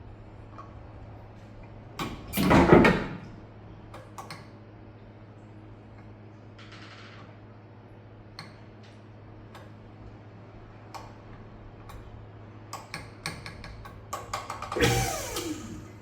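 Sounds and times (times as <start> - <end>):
steady low hum: 14.8 - 16.0.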